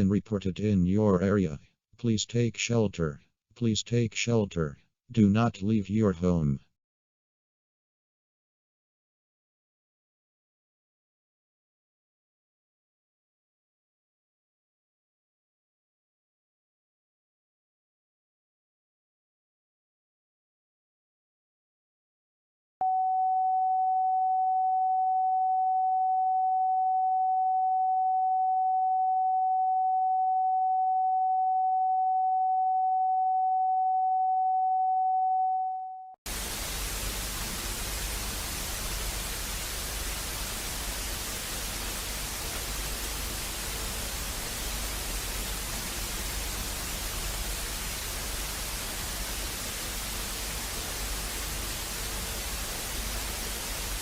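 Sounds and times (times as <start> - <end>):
loud static hiss: 36.3 - 54.0.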